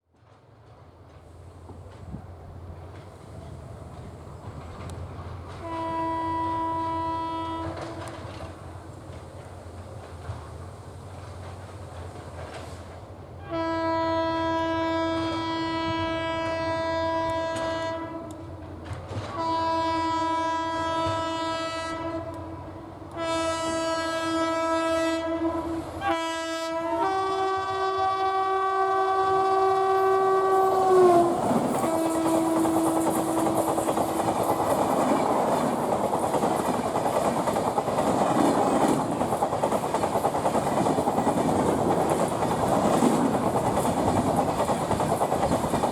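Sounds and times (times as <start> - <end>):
train coaches rushing by: 0.2 - 13.8, 14.5 - 26.4, 29.2 - 45.9
locomotive horn blasts: 5.6 - 8.2, 13.4 - 18.6, 19.3 - 33.6.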